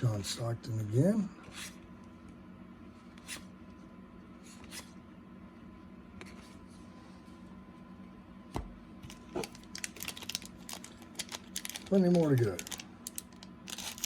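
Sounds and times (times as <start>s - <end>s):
steady low hum: 0.0s - 14.0s
cards sliding and rustling: 3.1s - 3.5s, 4.5s - 5.0s.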